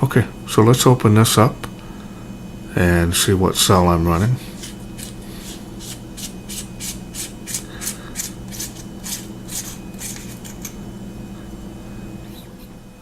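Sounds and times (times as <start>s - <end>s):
flashlight threads scraping: 4.5s - 10.8s.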